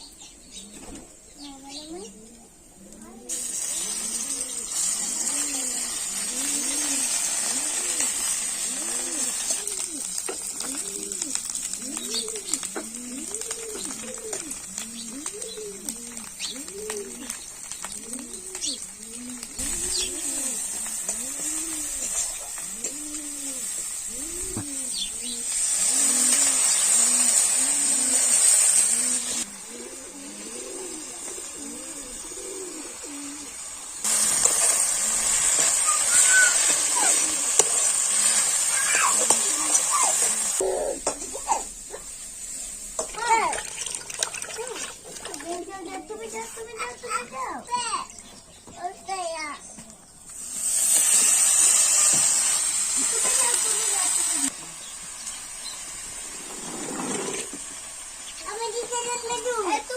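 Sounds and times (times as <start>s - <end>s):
doves cooing: 0.0s - 50.2s
steady high hiss: 0.0s - 59.9s.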